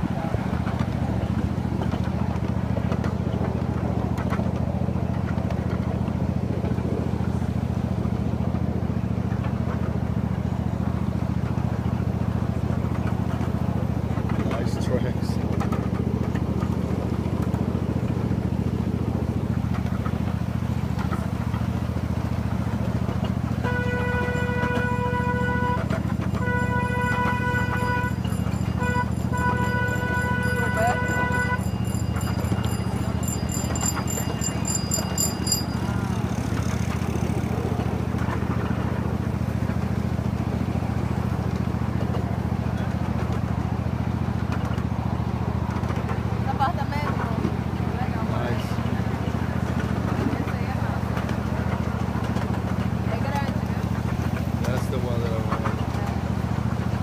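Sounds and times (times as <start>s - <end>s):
train engine running: 0.0s - 57.0s
train horn blast: 23.5s - 33.1s.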